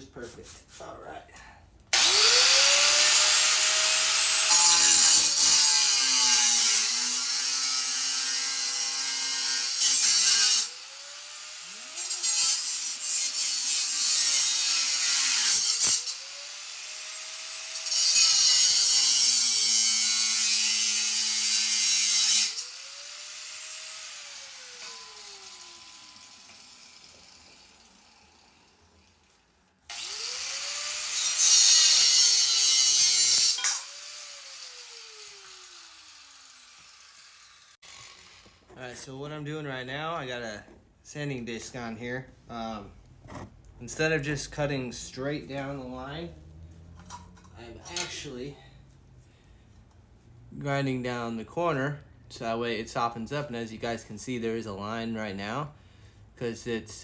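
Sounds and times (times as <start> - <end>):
angle grinder grinding steel: 2.0 - 38.7.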